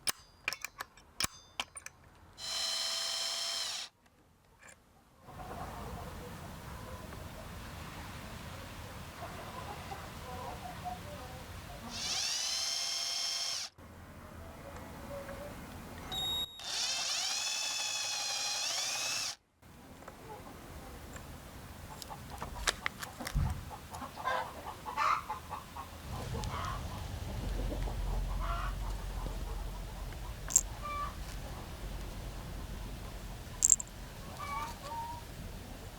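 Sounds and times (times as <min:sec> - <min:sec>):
small power tool whining: 0:02.4 - 0:03.9, 0:11.9 - 0:13.7, 0:16.2 - 0:19.4.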